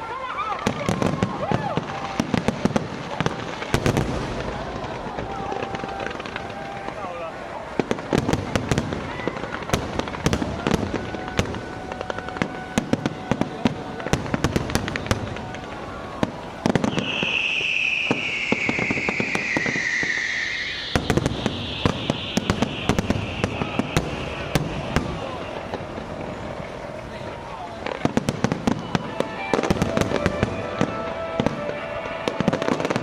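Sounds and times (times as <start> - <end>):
fireworks cracking and banging: 0.0 - 33.0
loud descending hiss: 15.3 - 27.7.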